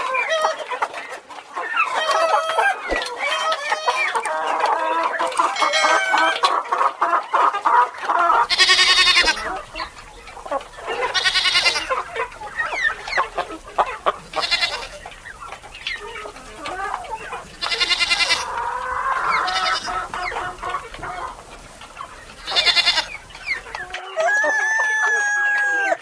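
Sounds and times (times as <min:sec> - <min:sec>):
chickens clucking: 0:00.1 - 0:25.0
harsh squawking calls: 0:08.3 - 0:24.0.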